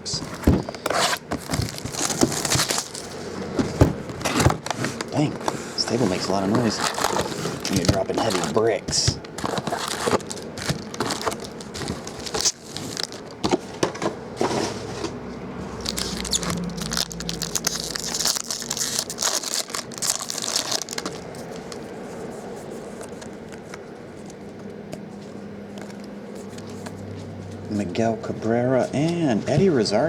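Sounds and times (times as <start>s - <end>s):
wrappers tearing and crinkling: 0.2s - 13.6s, 15.6s - 21.9s.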